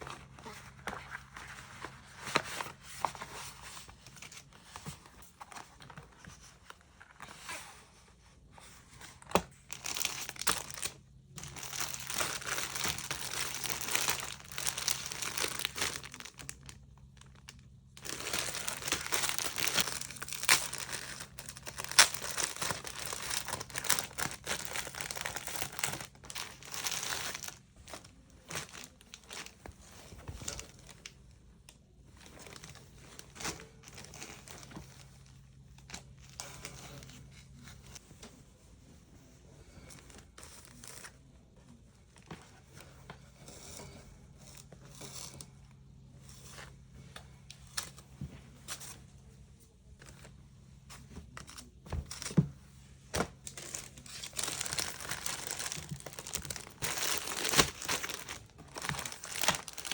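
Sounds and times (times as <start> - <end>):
packaging crinkling and rustling: 8.6 - 31.2, 31.8 - 38.3, 53.1 - 59.9.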